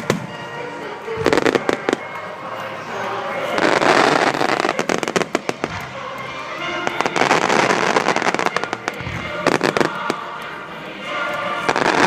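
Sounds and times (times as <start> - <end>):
fireworks crackling: 0.0 - 12.0
fireworks shells bursting: 3.5 - 10.6.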